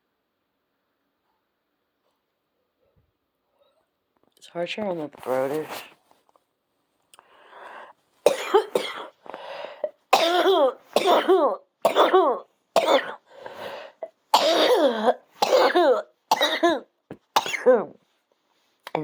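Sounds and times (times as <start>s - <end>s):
soft breathy sound: 7.1s - 8.2s, 9.2s - 10.1s, 13.2s - 14.2s
person coughing hard: 8.3s - 9.2s, 9.8s - 13.2s, 14.3s - 17.9s.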